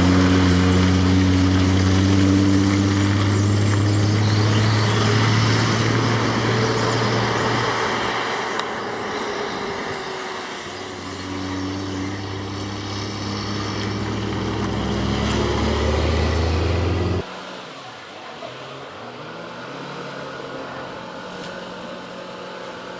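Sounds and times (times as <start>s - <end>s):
truck engine running: 0.0s - 17.2s.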